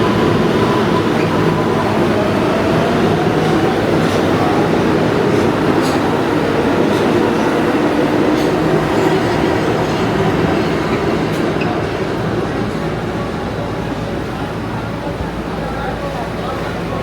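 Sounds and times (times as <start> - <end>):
wheels clicking on rails: 0.0 - 12.8
subway train rumbling: 0.0 - 17.0.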